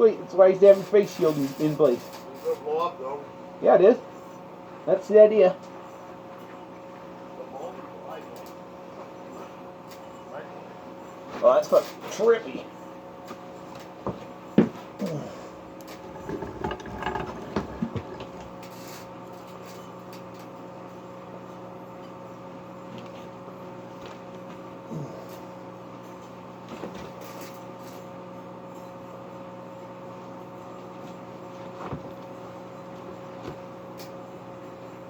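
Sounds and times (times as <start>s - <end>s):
microwave oven humming: 12.5s - 35.0s.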